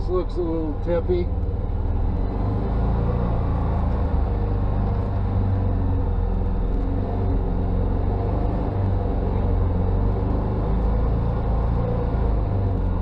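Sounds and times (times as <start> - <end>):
engine idling at low revs: 0.0 - 1.8.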